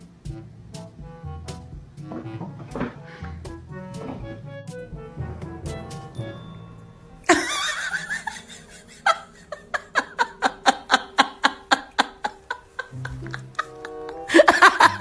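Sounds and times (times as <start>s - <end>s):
person laughing: 7.3s - 15.0s.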